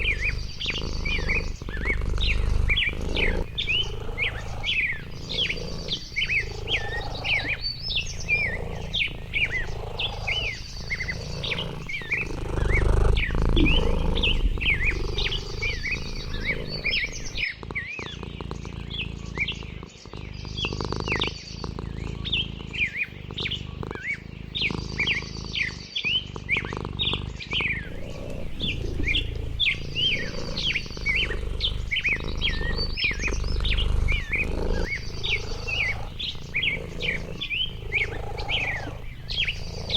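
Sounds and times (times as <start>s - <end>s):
high bird trill: 0.0s - 18.1s, 20.6s - 39.9s
songbirds chirping and singing: 0.0s - 39.9s.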